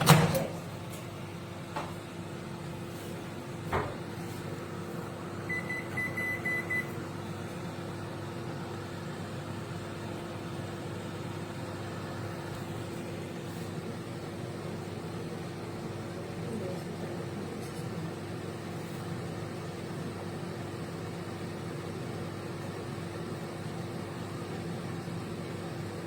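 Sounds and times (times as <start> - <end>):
microwave clicks: 0.0 - 1.1
microwave oven humming: 0.0 - 26.0
short high beeps: 5.5 - 6.9.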